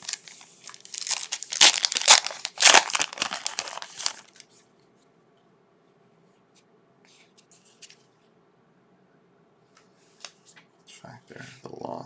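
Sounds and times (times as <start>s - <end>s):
wrapper crinkling and tearing: 0.0s - 4.5s.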